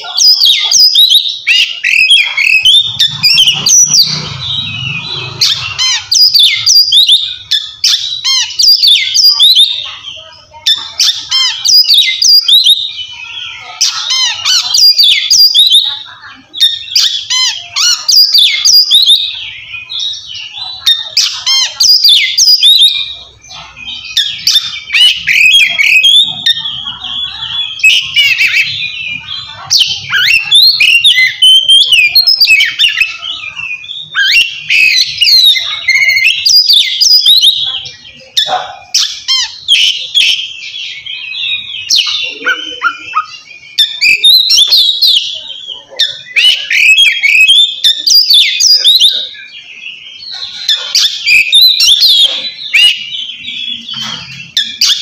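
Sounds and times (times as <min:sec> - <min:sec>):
bird singing whistles and trills: 0:00.0 - 0:55.0.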